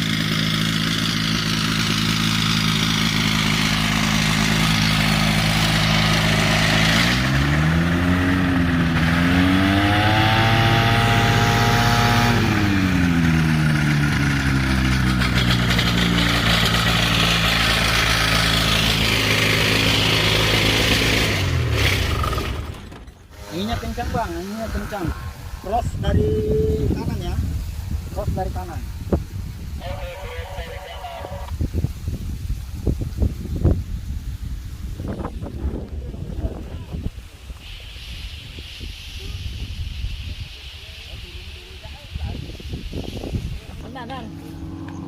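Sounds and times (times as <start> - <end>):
light aircraft engine running: 0.0 - 25.7, 43.2 - 45.0
wind rushing: 23.4 - 30.0, 31.5 - 45.0.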